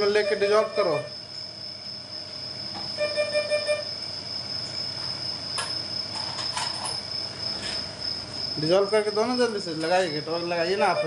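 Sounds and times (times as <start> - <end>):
high-pitched whine: 0.0 - 1.5, 2.7 - 4.7, 8.6 - 11.0.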